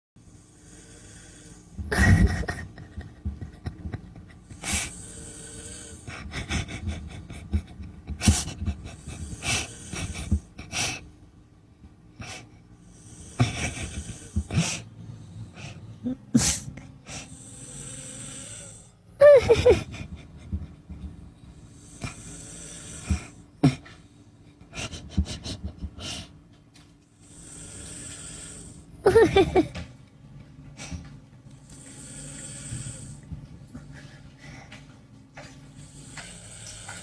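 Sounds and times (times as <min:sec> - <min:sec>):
heavy snoring: 0:00.3 - 0:02.5, 0:04.5 - 0:11.0, 0:12.2 - 0:19.0, 0:21.5 - 0:24.9, 0:27.2 - 0:29.4, 0:30.8 - 0:33.3, 0:35.7 - 0:37.0.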